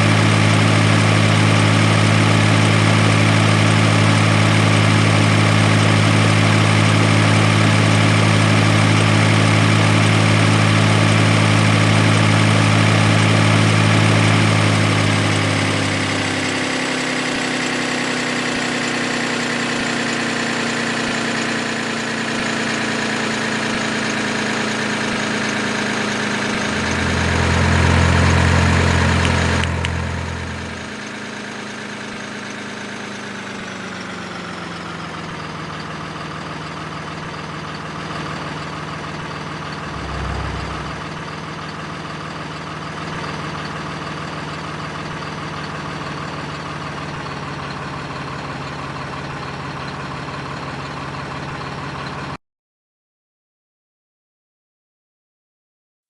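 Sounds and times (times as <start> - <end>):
heavy vehicle engine idling: 19.6 - 52.4
deep low hum: 26.6 - 30.1, 39.7 - 41.7.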